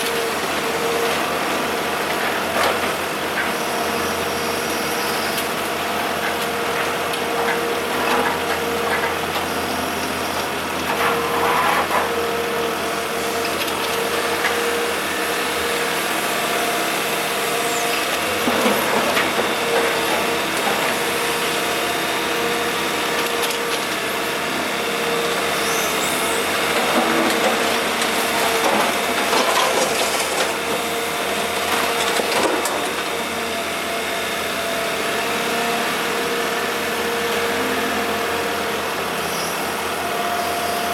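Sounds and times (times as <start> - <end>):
excavator diesel engine whining: 0.0 - 40.9
bucket clunking and scraping rubble: 26.8 - 30.8.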